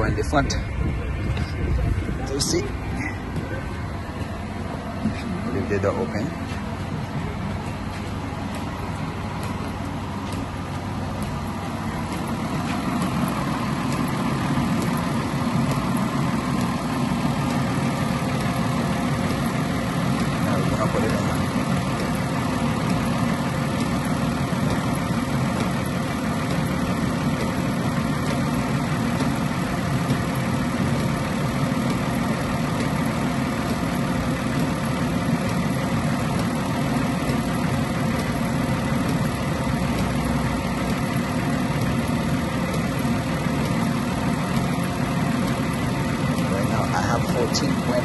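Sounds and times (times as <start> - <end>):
car engine idling: 0.0 - 48.0.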